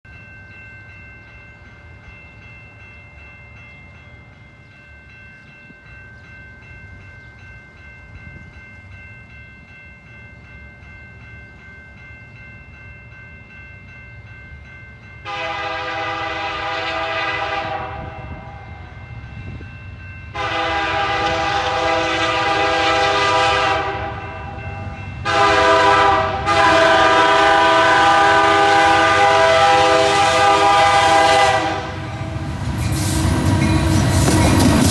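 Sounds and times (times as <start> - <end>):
train rumble: 14.6 - 34.9
locomotive horn blasts: 15.2 - 18.8, 20.3 - 32.3.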